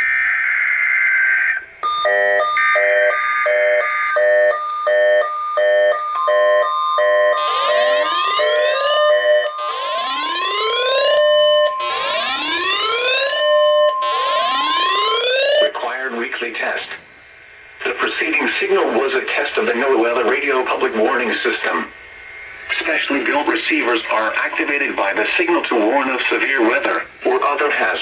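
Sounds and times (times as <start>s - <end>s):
steady warning alarm tone: 0.0s - 15.8s
harsh buzzing data burst: 7.4s - 15.8s
rising siren sweeps: 7.4s - 15.8s.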